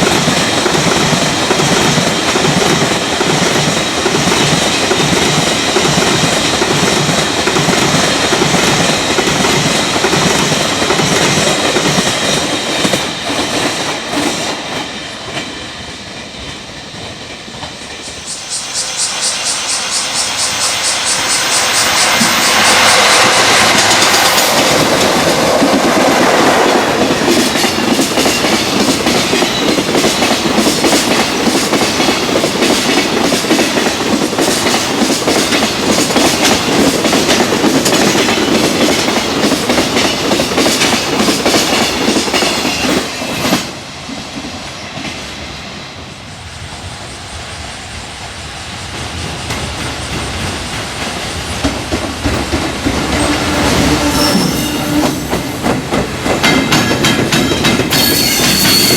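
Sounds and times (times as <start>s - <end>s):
train rumble: 0.0s - 58.9s
freight train wagons clattering: 49.4s - 58.9s.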